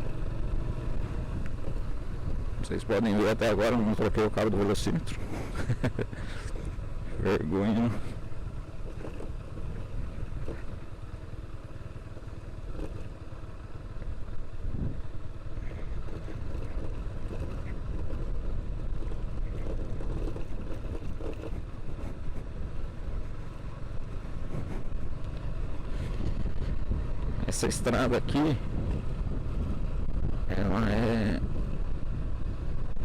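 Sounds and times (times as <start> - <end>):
motorcycle engine running: 0.0 - 33.0
wind noise on microphone: 14.7 - 15.1, 24.4 - 33.0.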